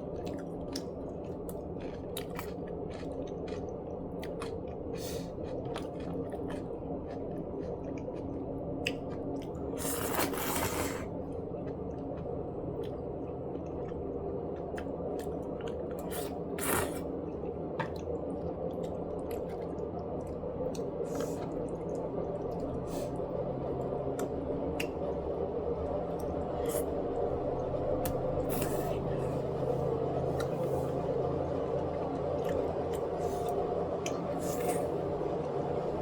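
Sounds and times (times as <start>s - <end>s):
wet chewing: 0.0s - 23.2s
steady low hum: 0.0s - 36.0s.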